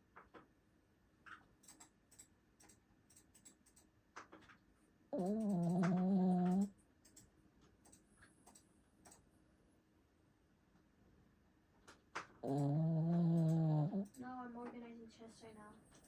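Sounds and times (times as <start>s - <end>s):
dog snoring: 5.1s - 6.7s, 12.4s - 14.2s
faint clicks: 5.2s - 9.3s.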